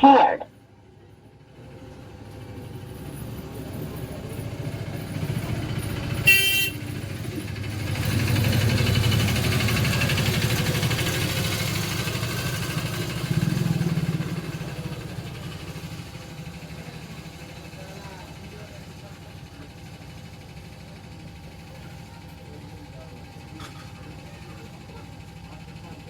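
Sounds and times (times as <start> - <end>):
horn honk: 6.2 - 6.9
motorcycle passing: 6.8 - 16.2.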